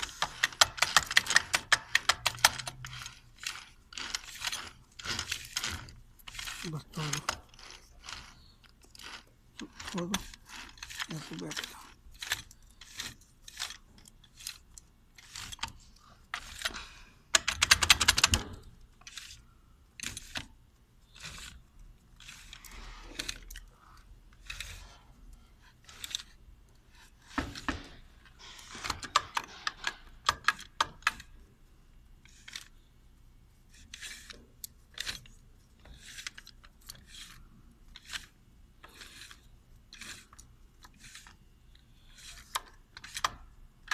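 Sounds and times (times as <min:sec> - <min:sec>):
metal parts and tools clicking: 0:00.0 - 0:20.5, 0:25.7 - 0:31.4, 0:33.8 - 0:43.9.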